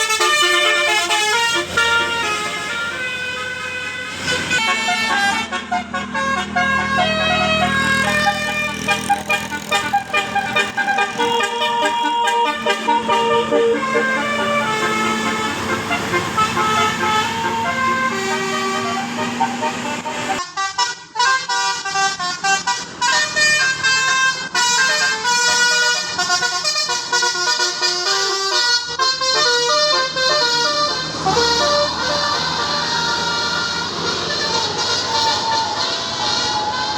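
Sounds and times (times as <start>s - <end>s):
bus musical air horn: 0.0s - 36.9s.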